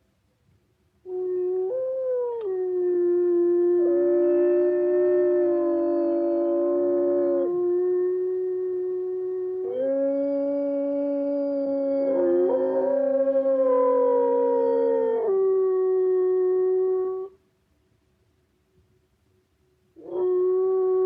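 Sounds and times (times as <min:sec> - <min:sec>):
wolves howling: 0:01.2 - 0:17.3.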